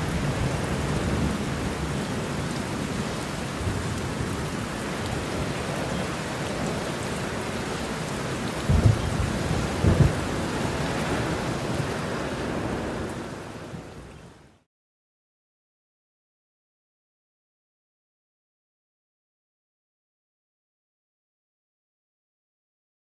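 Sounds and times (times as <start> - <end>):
steady rain: 0.0 - 14.7
low thunder rumbles: 8.5 - 13.9.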